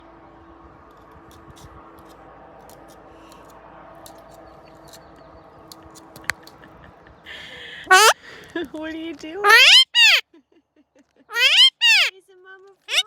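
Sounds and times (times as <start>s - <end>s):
parrot chirp rising in pitch: 7.9s - 8.2s, 9.5s - 10.2s, 11.3s - 12.1s.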